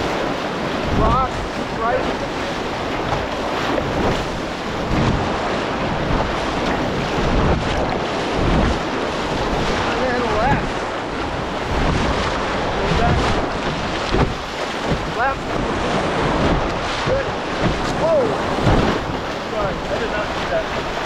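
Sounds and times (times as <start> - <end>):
whitewater rushing: 0.0 - 21.0
wind buffeting microphone: 0.0 - 21.0.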